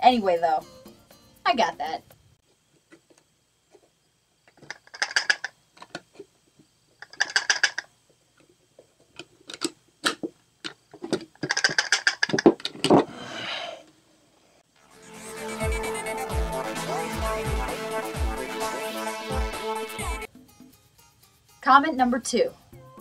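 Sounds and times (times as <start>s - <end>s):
metal objects clicking and rattling: 4.5s - 6.1s, 7.0s - 7.9s, 9.2s - 12.9s.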